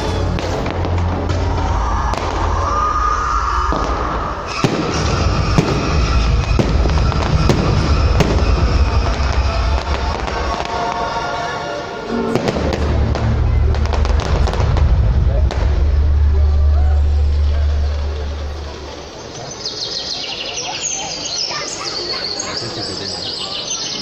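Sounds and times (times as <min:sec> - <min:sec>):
fireworks bursting and crackling: 0:00.0 - 0:19.9
loud music with heavy bass: 0:04.6 - 0:10.6, 0:12.8 - 0:18.8.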